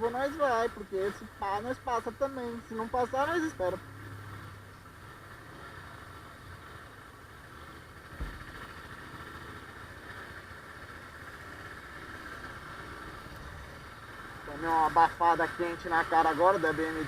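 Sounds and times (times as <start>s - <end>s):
engines idling in traffic: 0.0s - 17.0s
low thump: 8.1s - 8.5s.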